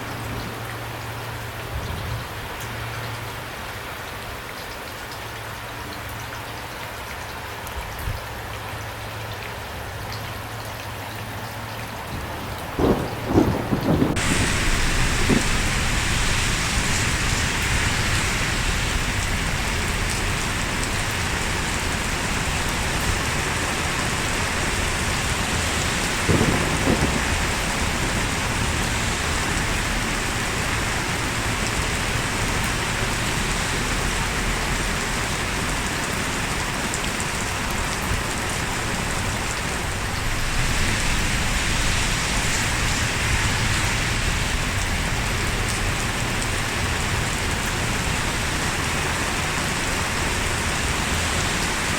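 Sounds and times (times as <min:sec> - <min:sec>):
heavy rain falling: 0:11.9 - 0:51.9
thunder rumbling: 0:12.1 - 0:36.7.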